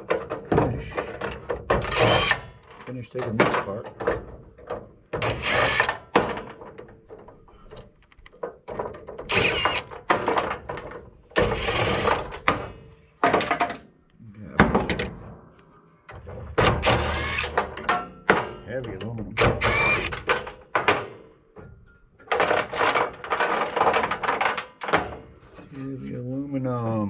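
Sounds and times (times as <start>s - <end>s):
metal parts clattering: 20.1s - 25.3s.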